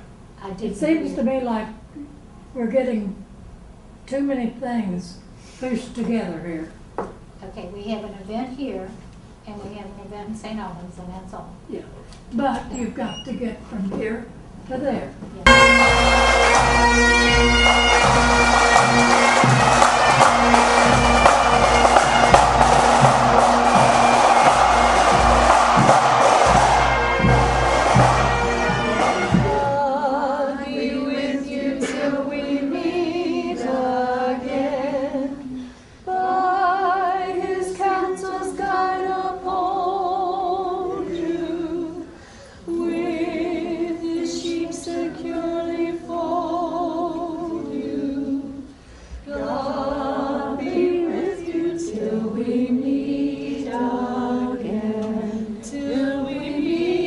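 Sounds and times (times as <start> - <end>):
music with drums: 15.5 - 29.8
choir singing unaccompanied: 15.5 - 57.0.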